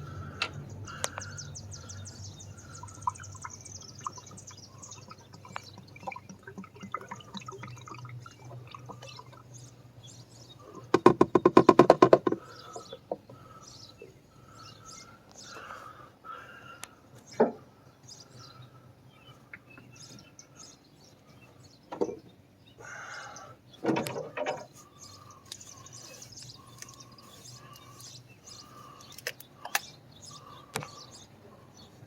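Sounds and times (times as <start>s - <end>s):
small birds chirping: 0.0s - 32.0s
sharp knocks: 10.9s - 12.4s.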